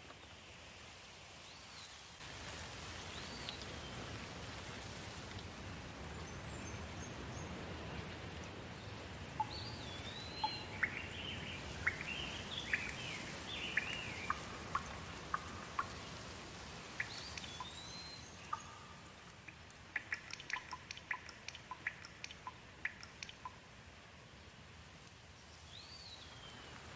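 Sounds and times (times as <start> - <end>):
steady rain: 0.0 - 26.9
birds chirping: 6.0 - 23.7
water drops pattering: 9.4 - 23.6.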